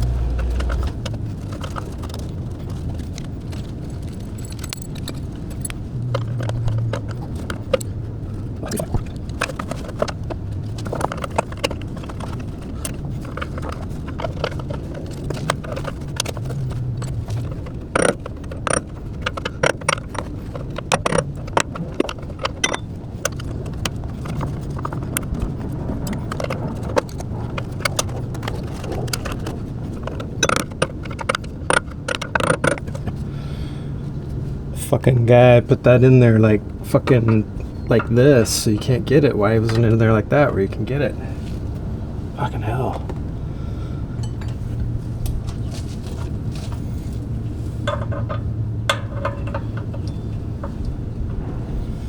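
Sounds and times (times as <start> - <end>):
low hum: 0.0 - 34.7, 35.7 - 52.0
metal tools clinking and scraping: 3.6 - 8.0, 8.6 - 25.0, 27.5 - 33.2, 45.5 - 50.8.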